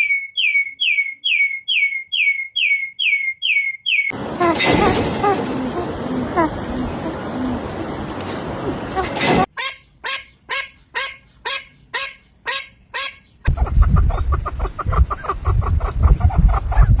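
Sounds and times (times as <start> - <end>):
bird calling: 0.0 - 8.0
low rumbling noise: 4.2 - 9.5.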